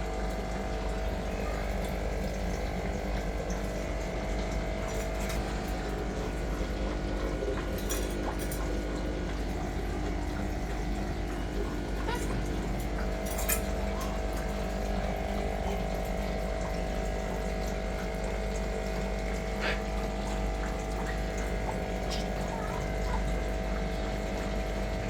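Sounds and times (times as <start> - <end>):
mechanical hum: 0.0 - 25.0.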